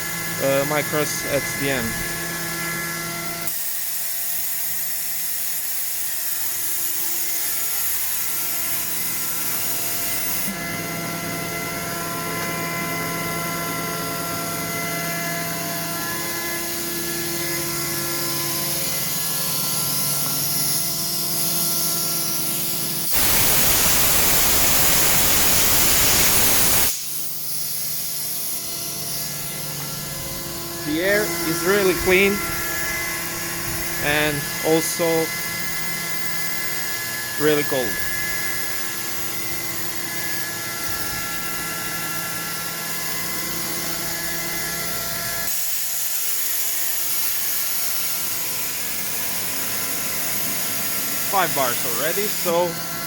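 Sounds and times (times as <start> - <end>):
air compressor running: 0.0 - 4.5, 7.6 - 39.8, 48.9 - 53.0
compressed air blast hissing: 23.0 - 27.7, 51.1 - 53.0.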